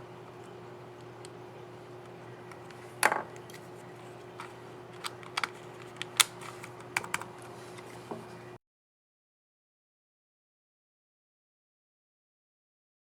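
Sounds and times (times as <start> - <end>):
steady low hum: 0.0 - 8.6.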